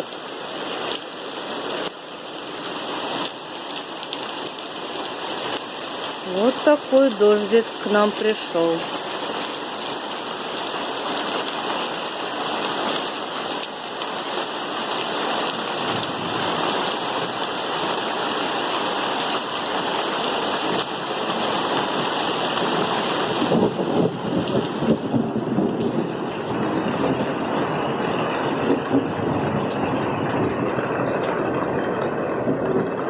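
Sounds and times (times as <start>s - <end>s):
heavy rain: 0.0s - 33.0s
low rumble of thunder: 22.6s - 33.0s.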